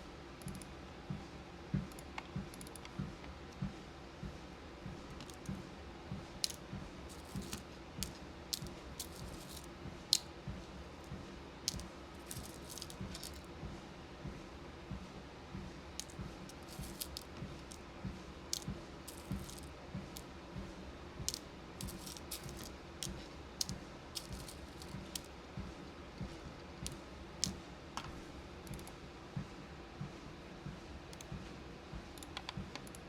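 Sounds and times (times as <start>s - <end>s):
beads clicking and rattling: 5.1s - 5.6s, 6.4s - 10.2s, 11.0s - 13.5s, 16.0s - 17.8s, 18.5s - 20.3s, 21.2s - 25.3s.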